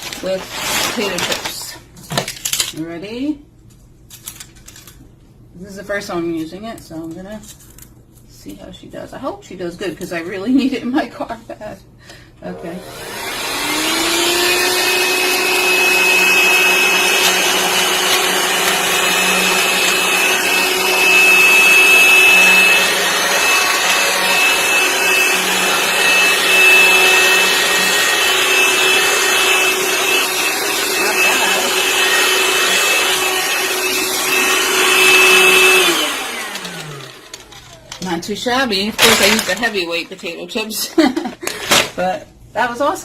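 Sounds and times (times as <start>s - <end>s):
handheld vacuum cleaner whine: 12.5s - 38.0s, 39.0s - 39.7s.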